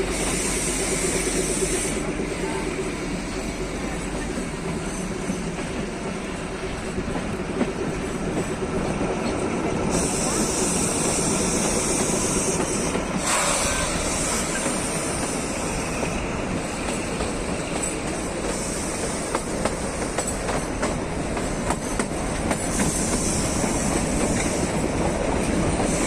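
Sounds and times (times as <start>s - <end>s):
train coaches rumbling on track: 0.0s - 26.0s
wheels clicking over rail joints: 16.6s - 26.0s.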